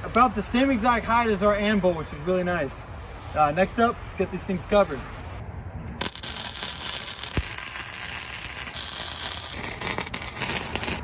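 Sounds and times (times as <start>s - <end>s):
arc welding crackling: 6.0s - 11.0s.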